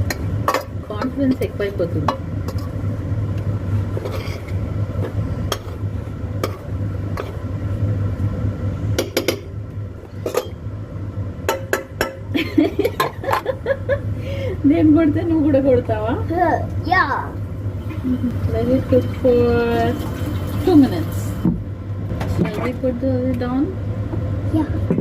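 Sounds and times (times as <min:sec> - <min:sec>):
low hum: 0:00.0 - 0:25.0
spatula scraping frying pan: 0:03.8 - 0:05.8.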